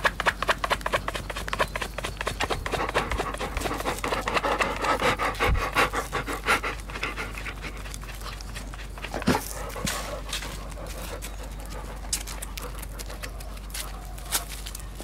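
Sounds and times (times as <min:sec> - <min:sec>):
dog scratching itself: 0:00.0 - 0:05.0.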